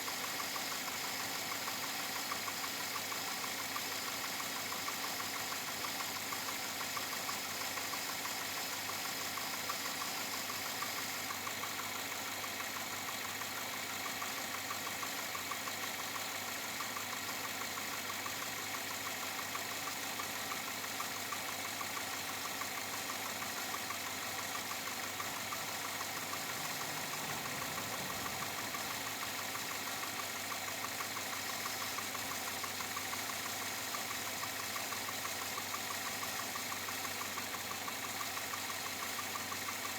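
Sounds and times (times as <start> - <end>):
engine idling with knocking tick: 0.0 - 39.9.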